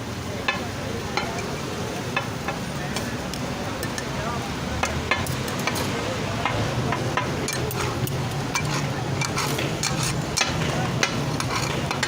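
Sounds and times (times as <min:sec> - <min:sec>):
metal spatulas scraping griddle: 0:07.2 - 0:12.0.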